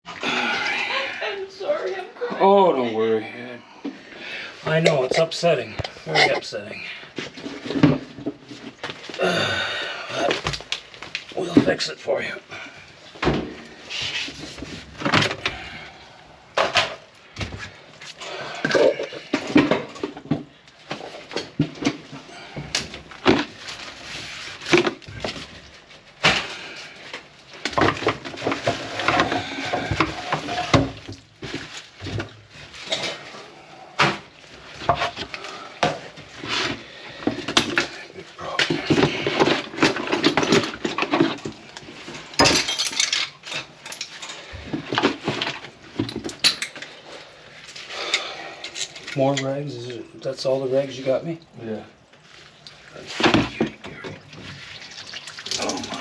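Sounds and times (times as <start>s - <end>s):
low voices: 3.5s - 7.0s
objects knocking and clattering: 7.1s - 9.2s, 10.2s - 11.8s, 13.0s - 15.9s, 16.5s - 33.4s, 34.0s - 47.0s, 53.0s - 56.0s.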